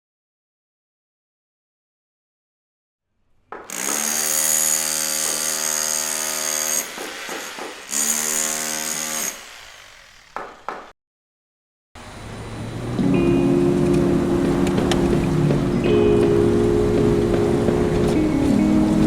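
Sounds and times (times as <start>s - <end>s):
hiss of cutting: 3.7s - 10.4s
power cutting tool motor whine: 3.7s - 10.4s.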